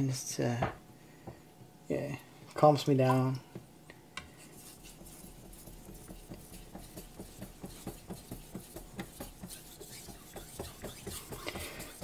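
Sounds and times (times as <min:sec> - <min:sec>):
knife rasping on whetstone: 0:04.3 - 0:12.0.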